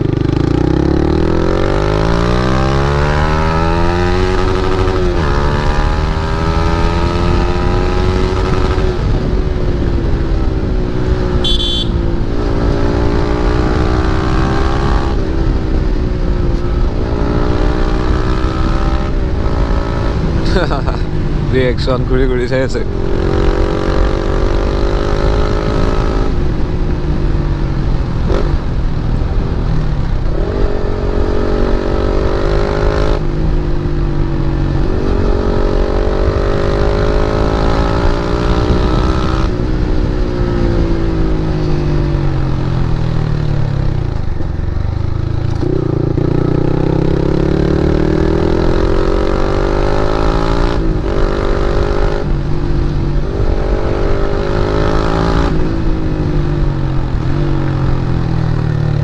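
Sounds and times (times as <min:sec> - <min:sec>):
motorcycle engine revving: 0:00.0 - 0:26.9, 0:27.5 - 0:59.0.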